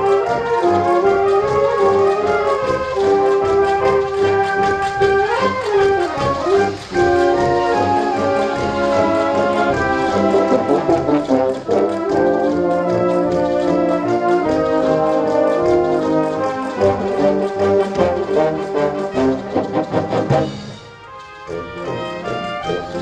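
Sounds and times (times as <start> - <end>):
brass band playing held chords: 0.0 - 23.0.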